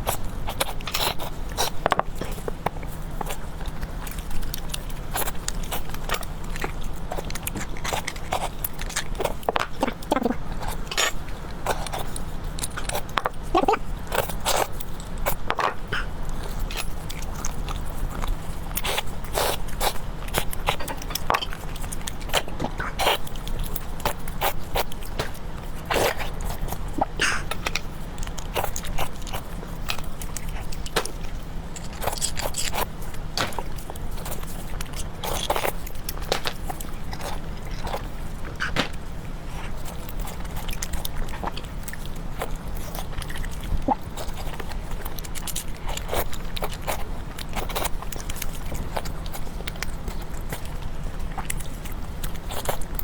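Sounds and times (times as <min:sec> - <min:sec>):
person chewing and biting: 0:00.0 - 0:53.0
steady low hum: 0:00.0 - 0:53.0.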